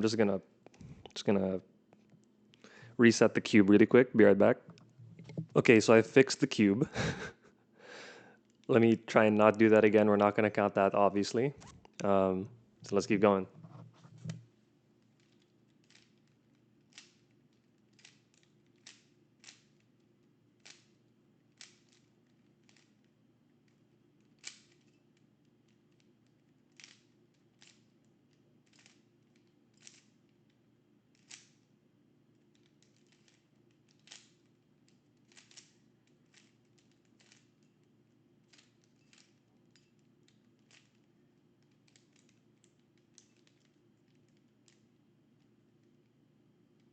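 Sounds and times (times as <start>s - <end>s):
cube layers clicking as turned: 15.2s - 30.5s, 31.1s - 31.7s, 32.4s - 37.8s, 38.4s - 44.9s.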